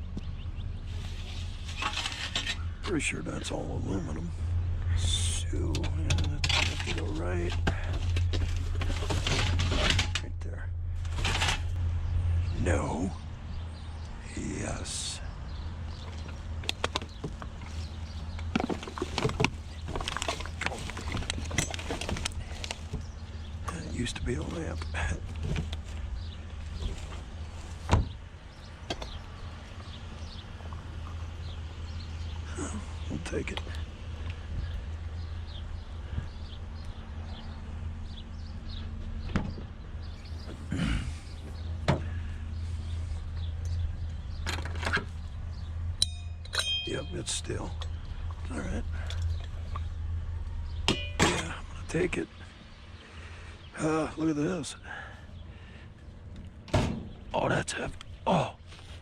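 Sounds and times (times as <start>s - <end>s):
birds chirping faintly: 0.0s - 59.0s
steady low hum: 0.0s - 59.0s
vehicle engine idling: 0.0s - 59.0s
junk being handled by hand: 1.0s - 2.9s, 5.6s - 12.4s, 15.9s - 28.2s, 40.4s - 45.6s
junk knocking and clunking: 1.7s - 14.2s, 15.5s - 42.6s, 43.3s - 52.0s, 56.3s - 58.1s.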